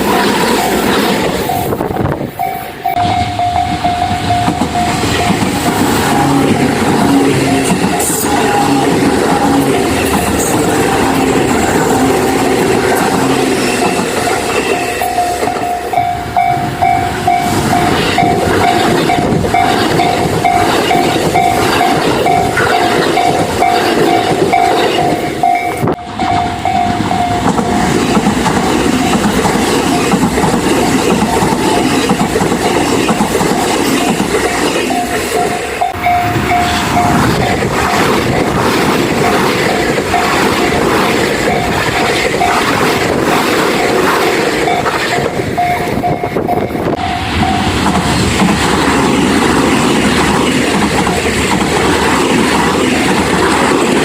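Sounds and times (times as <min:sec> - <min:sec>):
train wheels clattering on rails: 0:00.0 - 0:54.0
level crossing alarm dinging: 0:01.4 - 0:28.0, 0:33.8 - 0:38.6.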